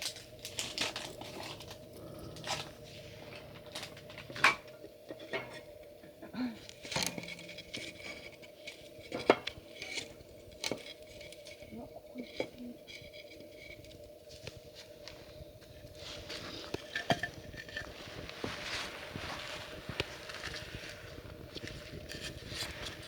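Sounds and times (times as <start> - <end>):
small hard objects clinking: 0.0 - 2.8
faint steady hum: 0.0 - 23.0.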